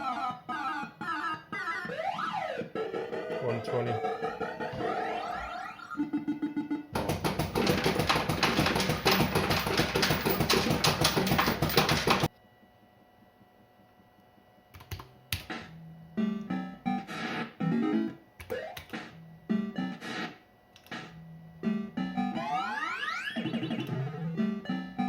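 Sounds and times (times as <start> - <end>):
fruit machine paying out coins: 7.0 - 12.3
faint electrical hum: 8.0 - 22.8.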